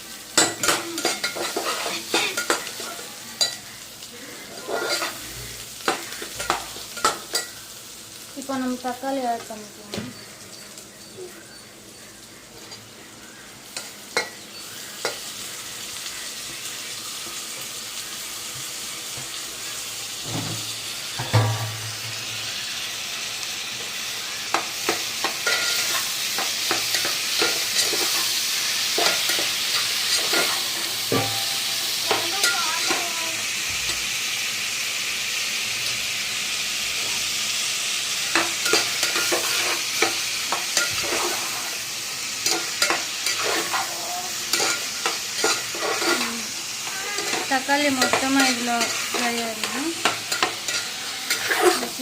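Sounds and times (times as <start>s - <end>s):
tomatoes sizzling in oil: 0.0s - 52.0s
spoon stirring and knocking pan: 0.4s - 3.7s, 5.8s - 7.6s, 21.2s - 22.3s, 24.5s - 33.1s, 38.3s - 41.5s, 42.4s - 52.0s.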